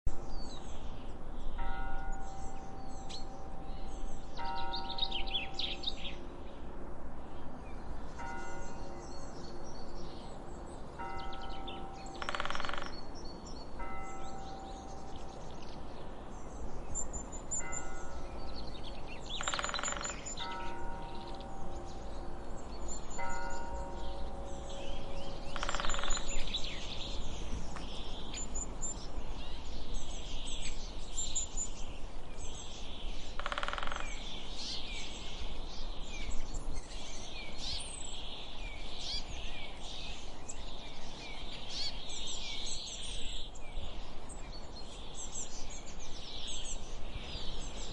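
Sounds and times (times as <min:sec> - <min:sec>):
low background noise: 0:00.1 - 0:47.9
songbirds chirping: 0:00.1 - 0:47.9
church bell tolling: 0:01.6 - 0:06.2, 0:08.1 - 0:15.9, 0:17.5 - 0:28.2.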